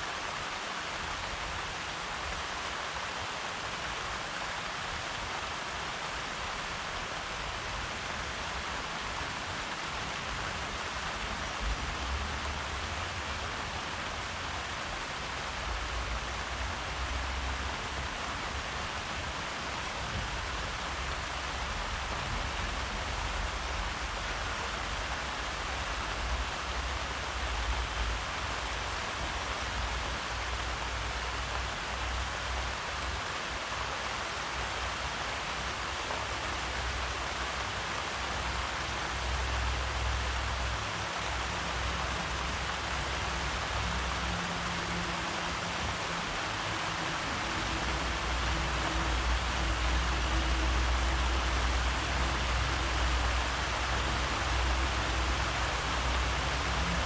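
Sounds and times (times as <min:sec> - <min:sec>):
steady rainfall: 0:00.0 - 0:57.0
low uneven rumble: 0:34.5 - 0:57.0.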